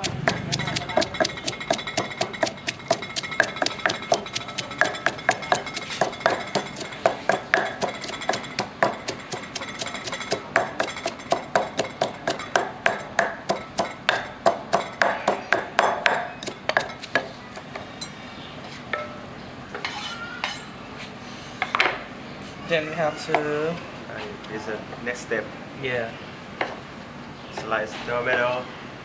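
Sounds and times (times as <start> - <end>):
pestle pounding in mortar: 0.0 - 17.9.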